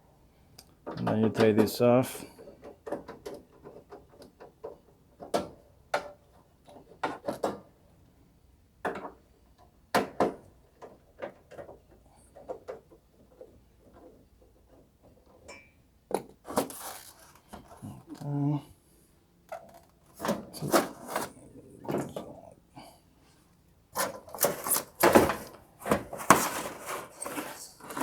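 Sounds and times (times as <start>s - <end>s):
plastic cover clicks and clunks: 24.0s - 28.0s.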